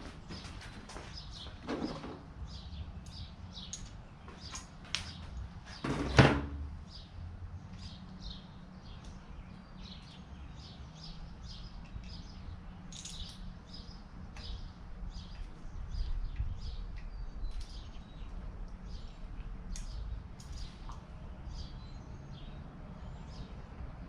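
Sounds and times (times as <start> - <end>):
small birds chirping: 0.0 - 6.1, 6.8 - 24.0
loud metal clunk: 5.8 - 6.6.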